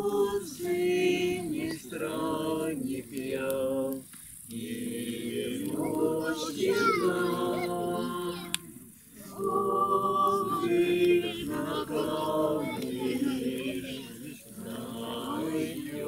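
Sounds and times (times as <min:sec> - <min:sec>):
group singing unaccompanied: 0:00.0 - 0:16.0.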